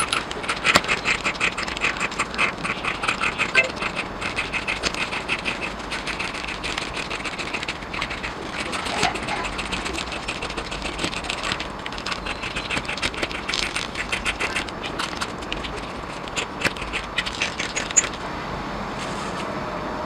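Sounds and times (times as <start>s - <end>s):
small clicks and scrapes: 0.0s - 18.3s, 19.0s - 19.5s
low background hum: 0.0s - 20.0s.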